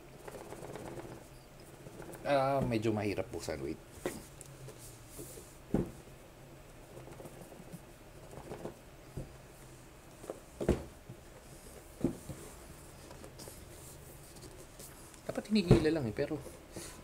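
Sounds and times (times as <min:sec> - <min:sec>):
dull knocks on cardboard box: 0:05.7 - 0:06.0, 0:10.6 - 0:11.0, 0:12.0 - 0:12.4.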